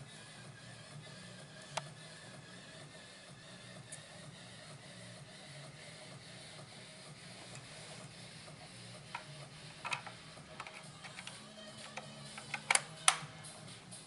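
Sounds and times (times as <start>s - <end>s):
plastic toy parts clicking: 9.2s - 13.2s.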